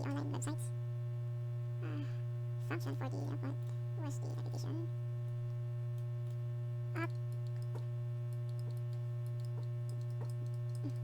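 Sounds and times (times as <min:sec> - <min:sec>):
electrical mains hum: 0:00.0 - 0:11.0.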